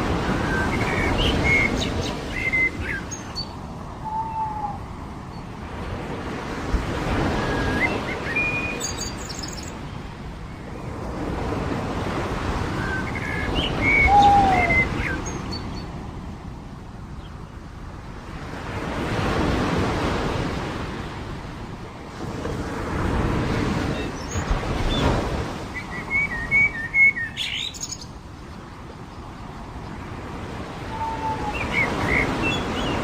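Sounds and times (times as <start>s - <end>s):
waves washing onto beach: 0.0s - 33.0s
small birds chirping: 7.8s - 10.1s, 25.7s - 30.0s.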